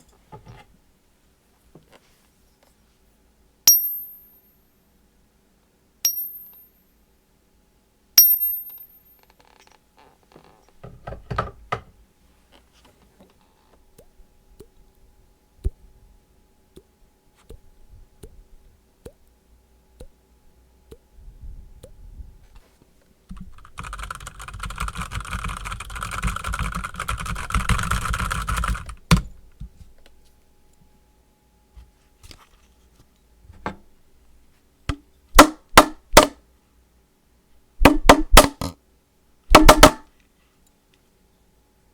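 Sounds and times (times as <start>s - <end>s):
high ding: 3.7s - 4.8s, 6.1s - 7.0s, 8.2s - 9.3s
mouth clicks and pops: 14.0s - 14.8s, 16.7s - 18.4s, 20.9s - 21.1s.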